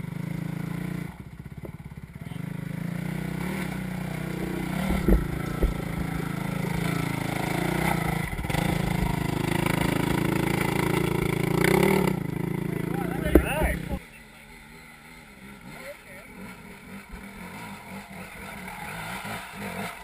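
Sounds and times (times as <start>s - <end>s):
dirt bike engine revving: 0.0s - 20.0s
dull thuds: 4.7s - 6.3s.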